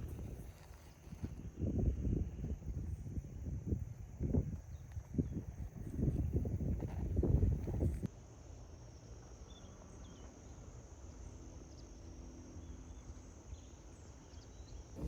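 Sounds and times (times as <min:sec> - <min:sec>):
crickets chirring: 0:00.0 - 0:08.1.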